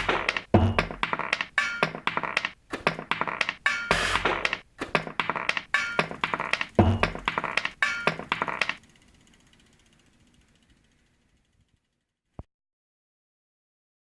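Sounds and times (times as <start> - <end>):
heavy thump: 0.0 - 8.8
mechanical clacks and knocks: 0.0 - 8.8.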